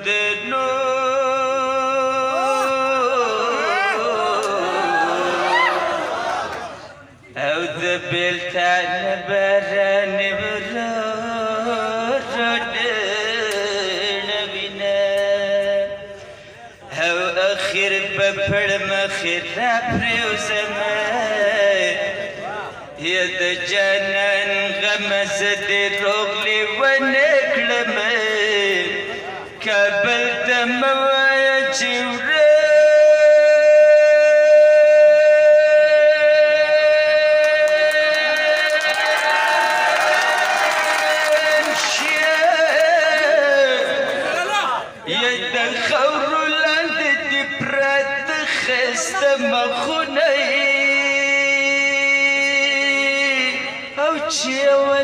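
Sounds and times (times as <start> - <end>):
man singing a high note: 0.0 - 5.6, 16.8 - 38.9.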